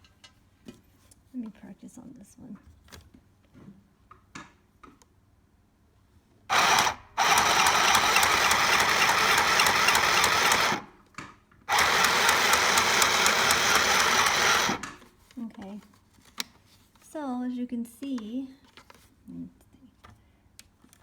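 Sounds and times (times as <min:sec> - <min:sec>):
electric sewing machine stitching: 0:06.5 - 0:11.0, 0:11.7 - 0:15.0.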